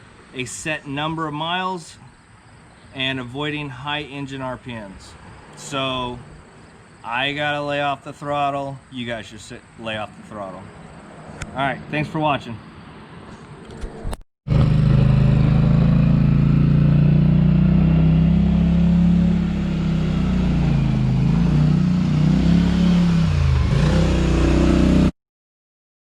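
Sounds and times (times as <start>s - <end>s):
atv engine running hard: 14.5s - 25.1s.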